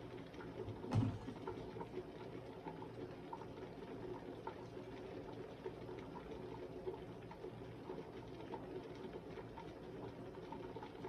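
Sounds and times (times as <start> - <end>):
soup bubbling in a pot: 0.0 - 11.0
soft thump: 0.9 - 1.4.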